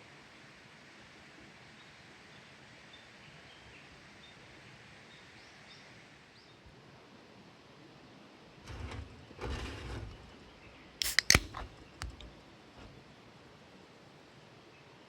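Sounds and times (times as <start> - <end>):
sharp clicks or knocks: 11.0 - 12.9.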